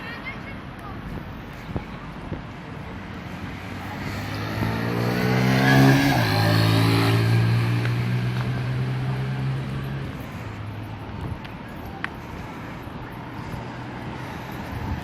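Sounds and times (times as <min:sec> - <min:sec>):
vehicle engine passing by: 0:03.2 - 0:10.8.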